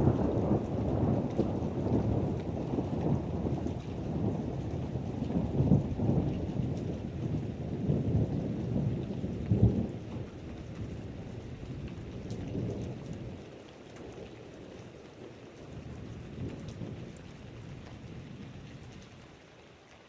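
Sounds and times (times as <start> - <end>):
rolling thunder: 0.0 - 13.4
heavy rain: 0.0 - 20.0.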